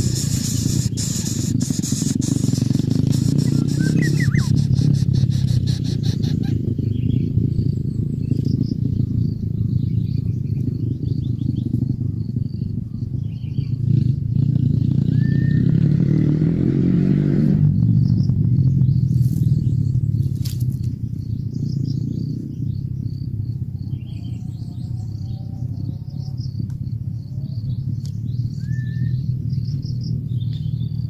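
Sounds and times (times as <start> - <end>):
whistled call: 0.0 - 6.6, 15.1 - 15.8, 28.6 - 29.3
faint high bird chirps: 0.0 - 13.9, 21.0 - 31.0
steady low rumble: 0.0 - 14.7, 17.7 - 31.0.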